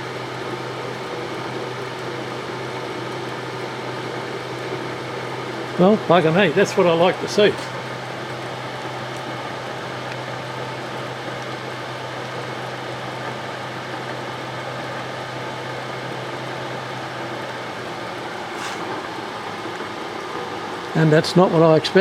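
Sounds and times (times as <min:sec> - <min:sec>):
grinder motor humming: 0:17.8 - 0:20.8.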